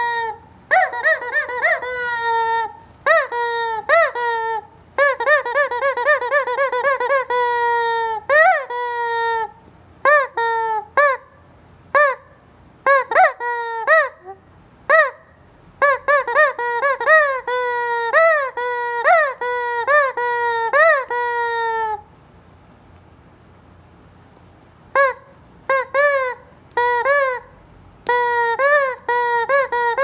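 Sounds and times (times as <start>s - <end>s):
rubber chicken toy squawking: 0.0s - 22.1s, 24.9s - 30.0s.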